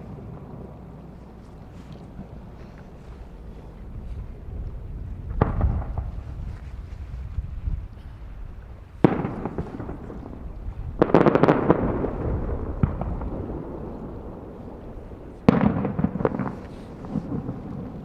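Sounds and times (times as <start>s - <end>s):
fireworks booming: 5.1s - 6.5s, 9.0s - 18.0s
fireworks crackling bursts: 9.0s - 10.4s, 11.0s - 14.4s, 15.2s - 18.0s.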